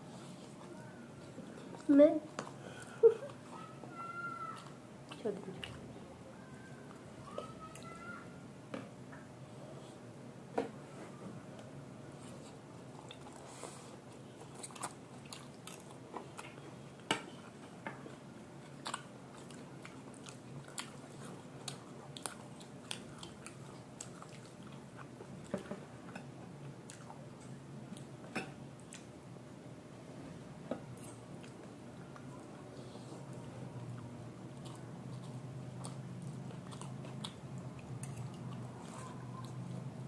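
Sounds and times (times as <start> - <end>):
chewing and biting food: 14.4 - 16.6, 18.6 - 25.5, 33.9 - 40.0.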